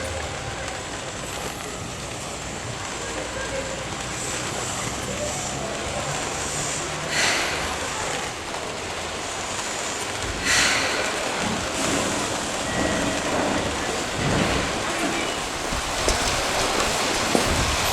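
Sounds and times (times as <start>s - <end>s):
electric train running on rails: 0.0s - 17.9s
short hisses: 7.1s - 7.8s, 10.4s - 11.2s.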